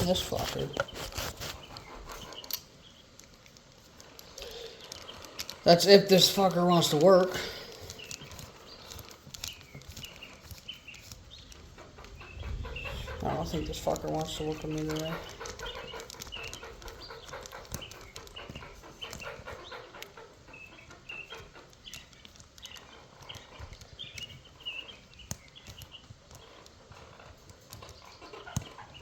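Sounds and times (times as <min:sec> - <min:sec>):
birds chirping and chattering: 0:00.0 - 0:29.0.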